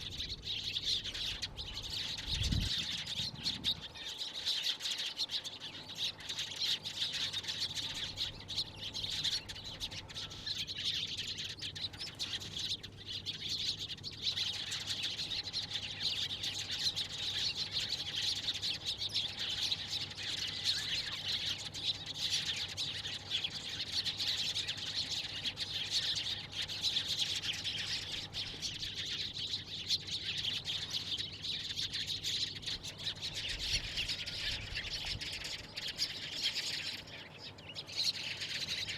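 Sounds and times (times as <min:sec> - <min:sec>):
sparrows chirping: 0:00.0 - 0:38.9.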